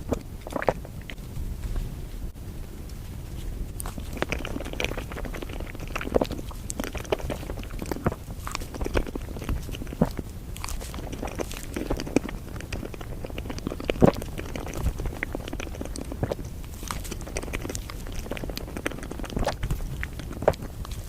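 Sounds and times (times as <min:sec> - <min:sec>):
person chewing and biting food: 0:00.0 - 0:01.2, 0:03.8 - 0:21.0
small clicks and crunches: 0:00.0 - 0:01.9, 0:02.8 - 0:21.0.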